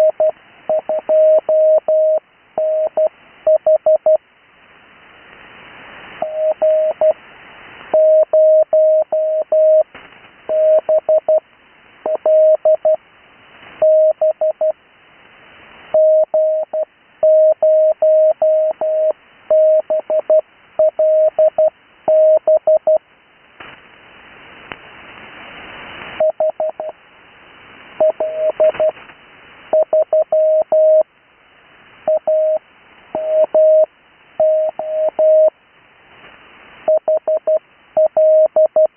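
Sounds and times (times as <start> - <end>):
morse code tone: 0.0 - 4.2, 6.2 - 7.2, 10.5 - 11.4, 28.0 - 28.9, 33.2 - 35.5, 36.9 - 38.9
radio receiver hiss: 23.5 - 38.2.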